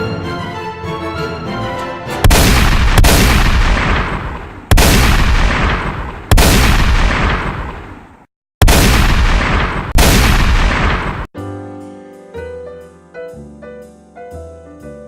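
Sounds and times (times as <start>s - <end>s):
music: 0.0s - 2.3s, 11.4s - 15.0s
loud booms: 2.2s - 11.3s.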